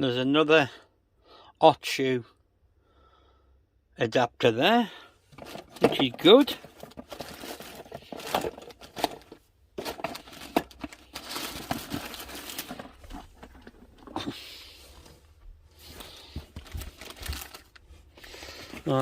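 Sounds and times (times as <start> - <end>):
packaging rustling and crinkling: 5.3 - 19.0.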